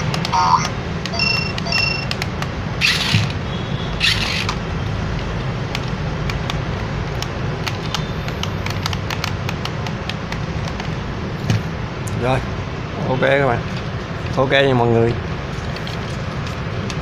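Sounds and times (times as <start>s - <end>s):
toy car electric motor hum: 2.8s - 3.4s, 4.0s - 4.6s.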